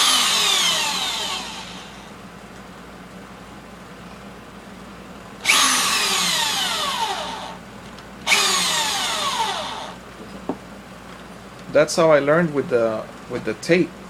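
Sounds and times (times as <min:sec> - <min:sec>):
power drill driving screws into wood: 0:00.0 - 0:01.9, 0:05.4 - 0:07.6, 0:08.3 - 0:10.0.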